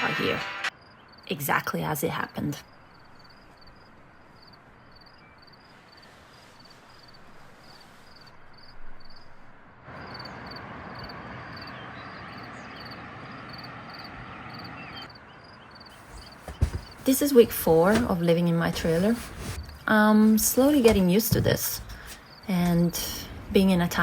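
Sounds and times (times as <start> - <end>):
crickets chirping: 0.7 - 1.3, 2.6 - 17.5, 20.5 - 23.5.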